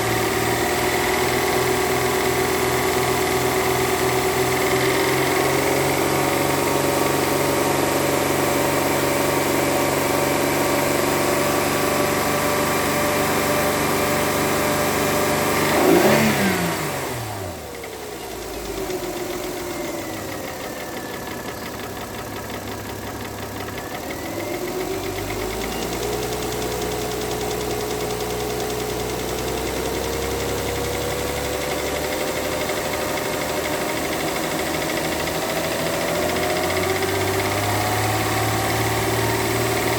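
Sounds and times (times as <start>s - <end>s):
car engine running with a knock: 17.7s - 39.9s.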